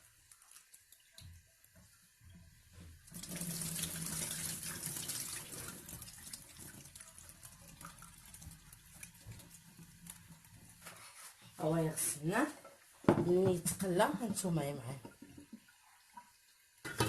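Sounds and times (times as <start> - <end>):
tap water running into bowl: 0.3 - 10.9.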